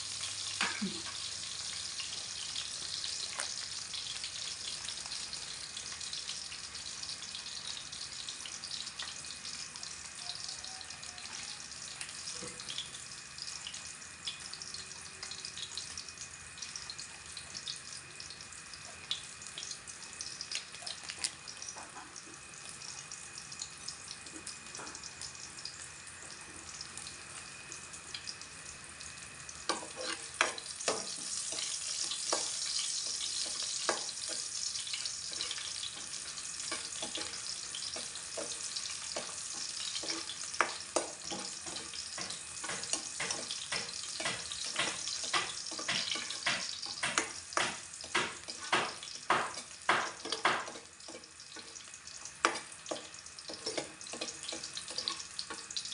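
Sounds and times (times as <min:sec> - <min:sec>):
clams sizzling in a pan: 0:00.0 - 0:55.9
stirring clattering knocks: 0:42.2 - 0:51.2.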